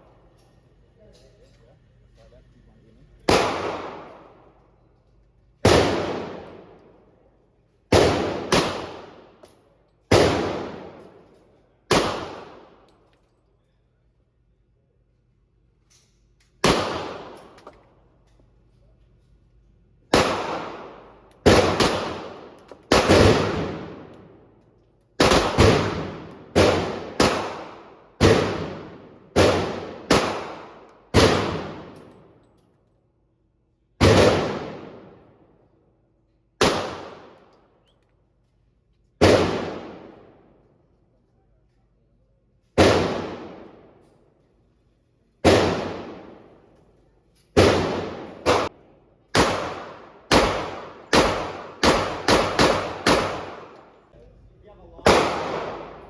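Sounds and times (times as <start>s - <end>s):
echoing gunshots: 3.3s - 4.6s, 5.6s - 7.1s, 7.9s - 9.4s, 10.1s - 11.2s, 11.9s - 12.9s, 16.6s - 17.6s, 20.1s - 24.6s, 25.2s - 32.4s, 34.0s - 35.5s, 36.6s - 37.5s, 39.2s - 40.6s, 42.8s - 44.0s, 45.4s - 46.7s, 47.6s - 54.0s, 55.0s - 56.0s.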